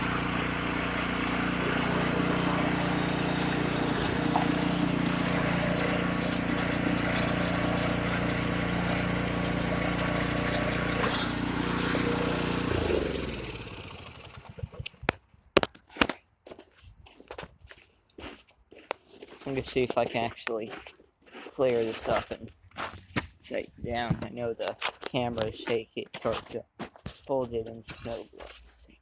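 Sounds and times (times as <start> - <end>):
snowblower engine running: 0.0 - 15.1.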